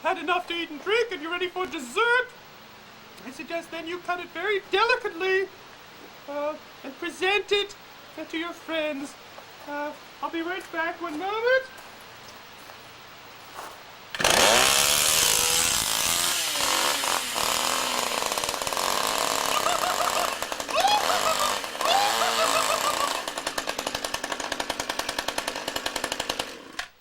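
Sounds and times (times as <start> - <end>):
chainsaw revving: 14.1 - 27.0.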